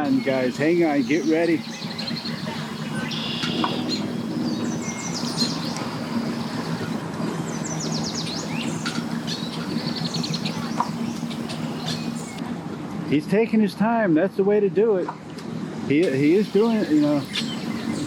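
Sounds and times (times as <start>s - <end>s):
birds chirping: 0.0s - 12.4s, 16.0s - 18.0s
boat engine idling: 0.0s - 12.4s, 16.0s - 18.0s.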